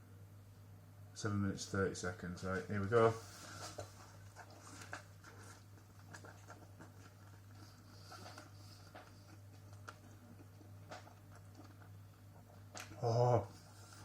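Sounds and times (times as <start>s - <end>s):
steady low hum: 0.0s - 14.0s
person chewing: 4.0s - 14.0s.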